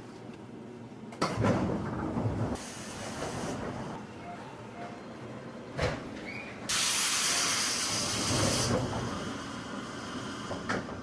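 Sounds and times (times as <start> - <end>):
compressed air hissing: 6.7 - 10.5.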